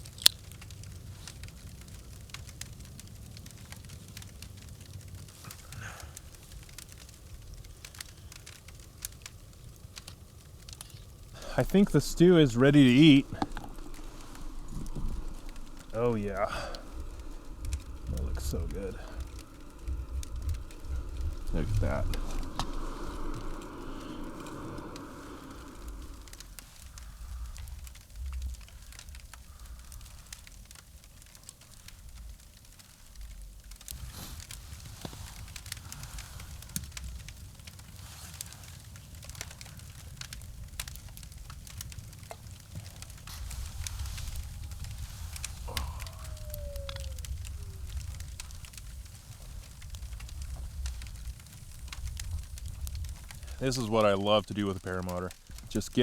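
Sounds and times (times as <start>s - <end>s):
campfire crackling and popping: 0.0s - 56.0s
low rumble: 4.4s - 30.8s, 39.2s - 56.0s.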